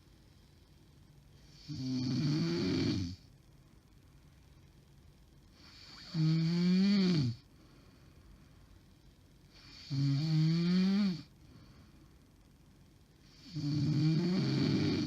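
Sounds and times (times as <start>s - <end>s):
woman snoring: 1.4s - 3.2s, 5.6s - 7.4s, 9.6s - 11.3s, 13.3s - 15.0s.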